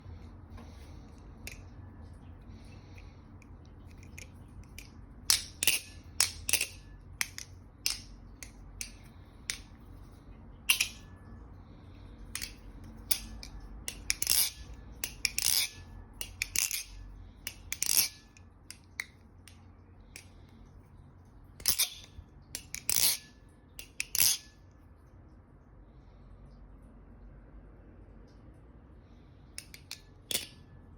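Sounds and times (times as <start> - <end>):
butterfly knife metallic clicks: 3.9 - 9.7, 10.7 - 11.1, 12.4 - 19.6, 29.6 - 30.6.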